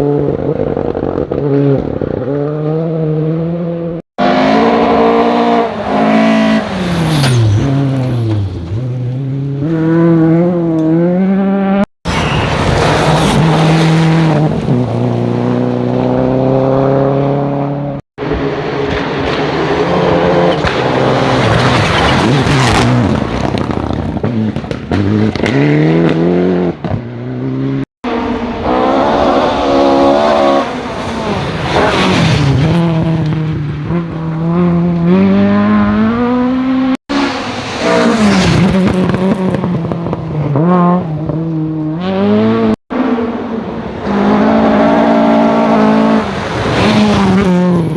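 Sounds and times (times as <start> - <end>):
rally car engines revving: 0.0 - 47.9.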